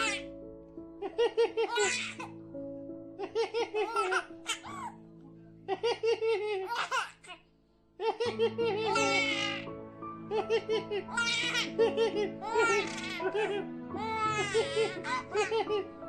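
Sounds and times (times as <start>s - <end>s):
baby giggling: 1.0s - 2.3s, 3.2s - 5.0s, 5.7s - 7.4s, 8.0s - 9.7s, 10.4s - 15.8s
music with long held notes: 8.2s - 16.0s.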